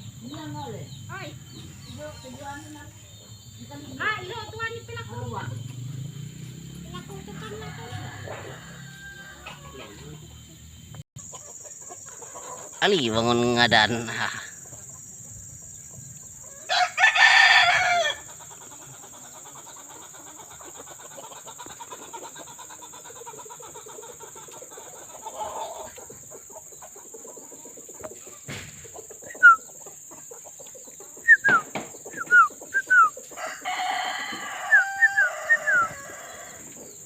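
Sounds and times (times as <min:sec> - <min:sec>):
small bird chirping: 0:00.0 - 0:07.5, 0:25.4 - 0:33.3
rooster crowing: 0:06.9 - 0:10.4, 0:16.4 - 0:18.3, 0:32.2 - 0:37.0.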